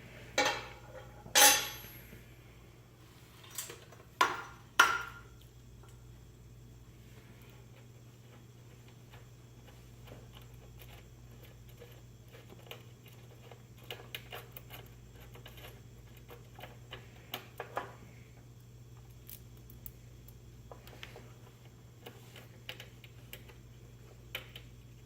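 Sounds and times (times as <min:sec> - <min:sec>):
faint clicks and taps: 0:20.7 - 0:25.0.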